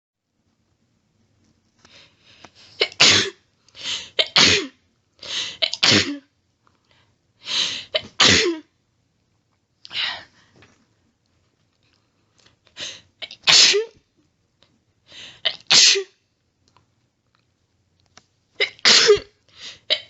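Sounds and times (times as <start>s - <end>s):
person sneezing: 2.8s - 6.3s, 7.6s - 8.6s, 12.8s - 13.9s, 15.5s - 16.2s, 18.6s - 20.0s.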